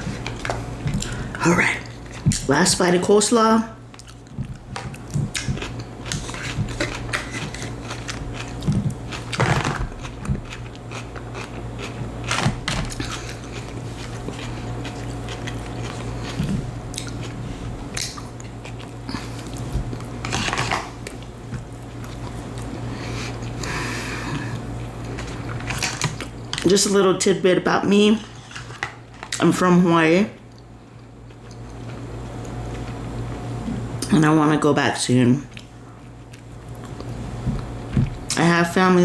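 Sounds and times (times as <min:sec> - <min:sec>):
steady low hum: 0:00.0 - 0:39.0
close chewing: 0:03.9 - 0:23.7.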